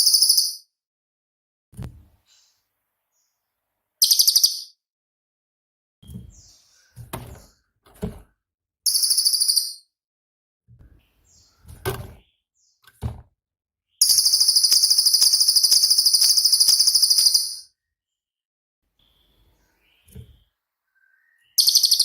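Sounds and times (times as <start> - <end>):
songbird singing trills: 19.0 - 22.0.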